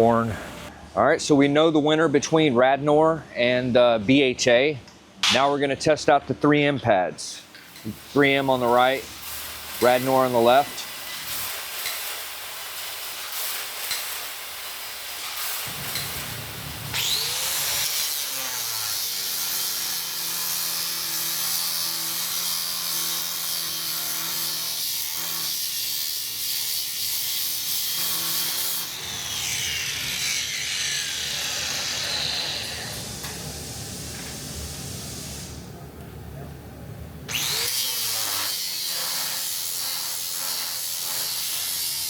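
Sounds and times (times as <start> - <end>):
angle grinder grinding steel: 7.7 - 33.4, 37.3 - 42.0
hiss: 7.8 - 25.8, 31.4 - 35.7.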